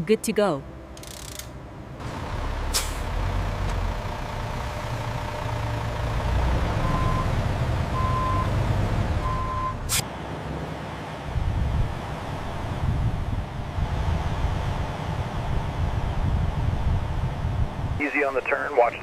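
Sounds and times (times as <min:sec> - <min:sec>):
truck engine rumbling: 0:00.0 - 0:19.0
reversing alarm beeps: 0:06.8 - 0:08.5, 0:09.2 - 0:09.8.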